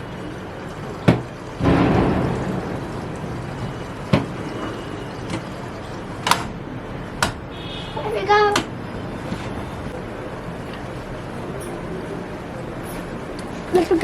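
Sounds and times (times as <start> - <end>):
washing machine clicks and knocks: 0.8 - 6.6, 7.2 - 7.5
rush of noise: 1.6 - 5.3.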